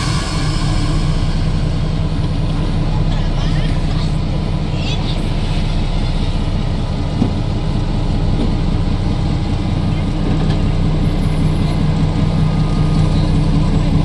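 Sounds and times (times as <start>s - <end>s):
diesel locomotive engine rumbling: 0.0s - 14.0s.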